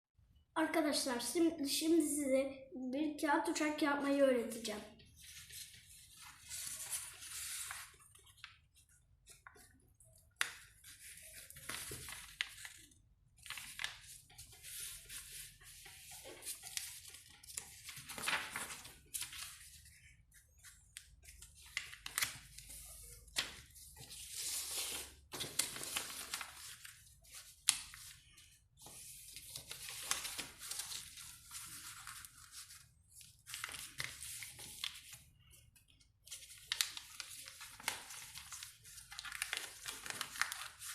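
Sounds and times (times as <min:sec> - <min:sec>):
paper rustling and crinkling: 0:05.2 - 0:40.9.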